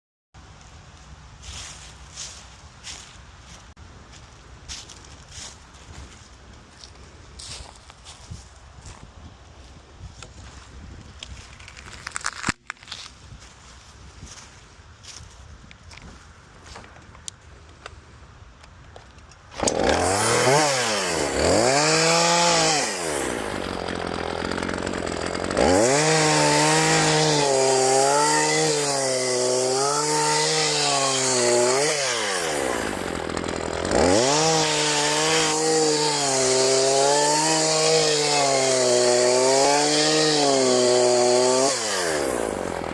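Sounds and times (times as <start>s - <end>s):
chainsaw revving and cutting: 19.5s - 42.9s.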